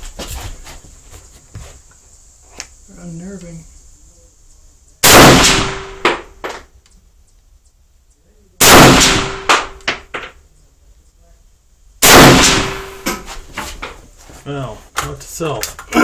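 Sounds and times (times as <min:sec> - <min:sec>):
rifle shots with echo: 0:05.0 - 0:06.3, 0:08.6 - 0:10.1, 0:12.0 - 0:13.1.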